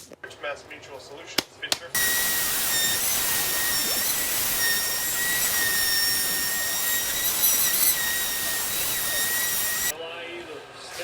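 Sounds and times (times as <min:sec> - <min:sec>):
power sander on wood: 0:02.0 - 0:09.9.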